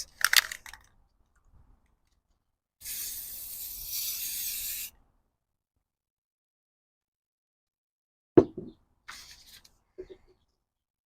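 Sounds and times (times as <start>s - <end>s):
spray paint can hissing: 2.8s - 5.0s.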